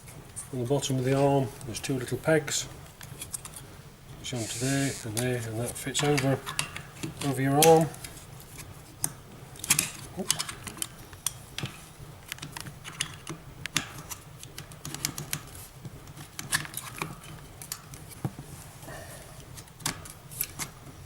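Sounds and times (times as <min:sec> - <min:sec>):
sharp clicks of plastic parts: 0:09.0 - 0:18.1.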